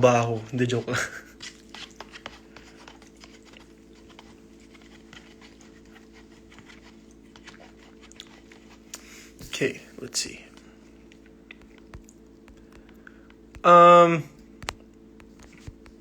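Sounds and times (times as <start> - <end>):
low electrical hum: 0.0 - 16.0
faint chewing: 0.9 - 9.6, 10.5 - 13.7.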